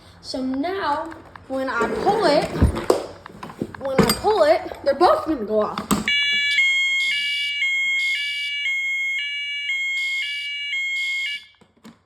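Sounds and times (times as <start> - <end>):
fire alarm sirens: 6.1 - 11.6.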